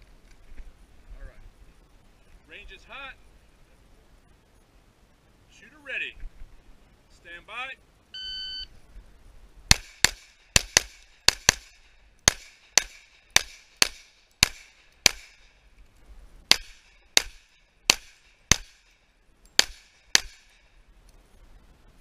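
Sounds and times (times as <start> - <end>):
pistol shots: 9.7 - 15.6, 16.5 - 18.9, 19.6 - 20.7.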